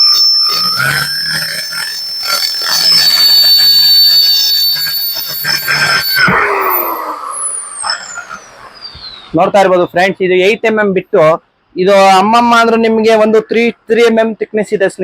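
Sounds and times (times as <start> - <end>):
drill bit rasping through metal: 0.0 - 9.2
drill motor whine: 0.0 - 9.8.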